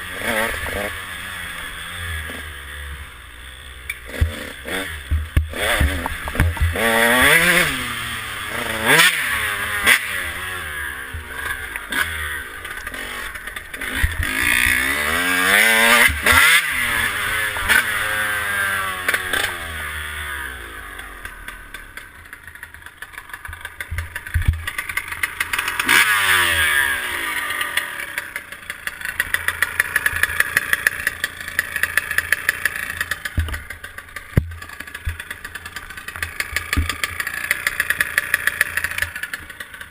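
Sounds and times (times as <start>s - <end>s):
motocross engine revving: 0.0s - 39.9s.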